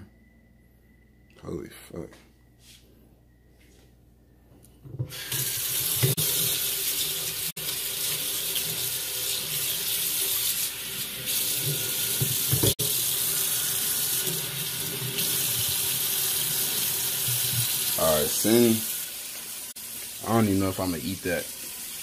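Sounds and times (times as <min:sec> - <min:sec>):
tap running water into sink: 0:05.0 - 0:18.0.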